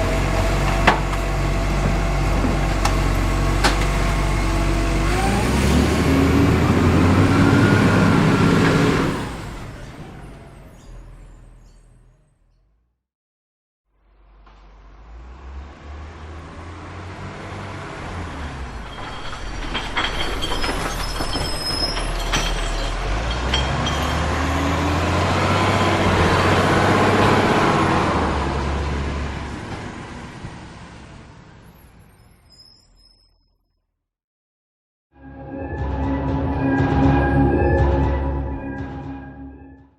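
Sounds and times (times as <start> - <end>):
heavy truck engine drone: 0.0 - 12.8, 13.9 - 21.2, 22.3 - 32.4, 35.2 - 39.9
high squeals: 18.9 - 22.9, 32.0 - 33.7.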